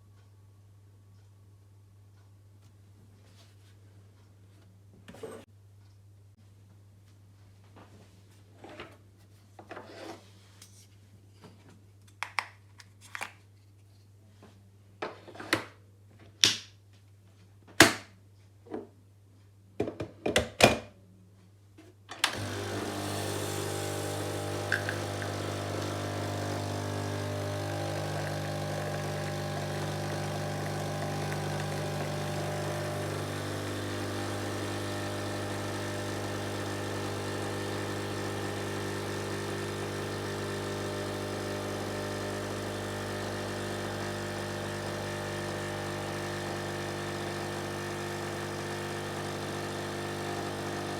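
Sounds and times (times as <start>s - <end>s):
coffee machine pump humming: 22.2s - 50.9s.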